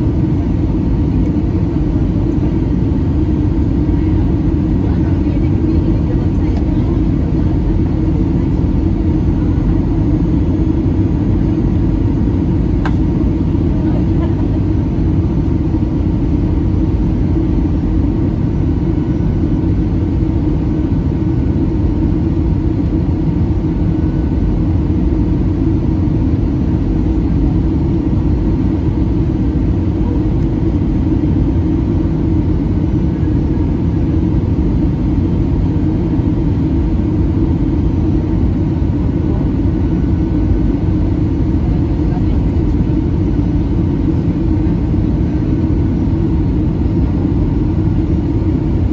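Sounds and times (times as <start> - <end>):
airplane cabin engine rumble: 0.0 - 48.9.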